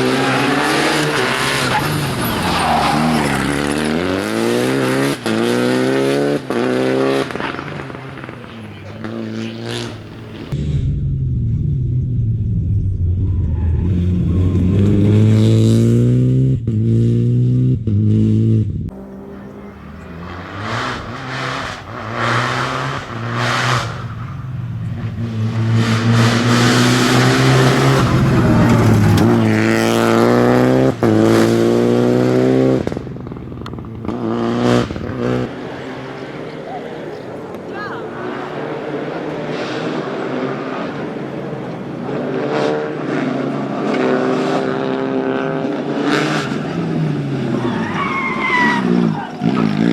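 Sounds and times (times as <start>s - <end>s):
tyre noise: 0.0s - 10.6s, 18.9s - 35.5s
rally car engine revving: 0.0s - 49.9s.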